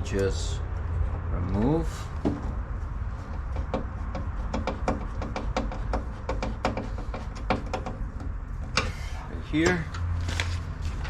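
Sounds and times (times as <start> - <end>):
hand tools clicking and knocking: 3.2 - 9.0.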